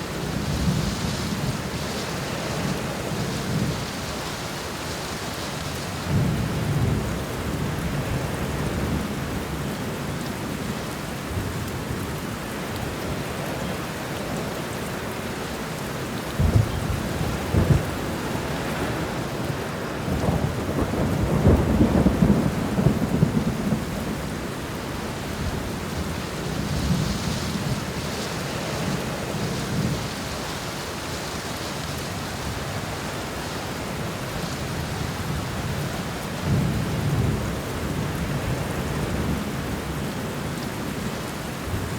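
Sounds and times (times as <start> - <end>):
rain on a window: 0.0 - 41.9
thunder rolling: 16.4 - 19.2, 20.1 - 24.4.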